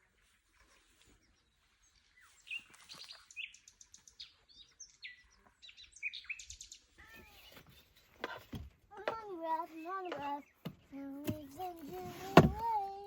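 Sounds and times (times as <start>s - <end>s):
birds chirping and trilling: 0.0s - 12.7s.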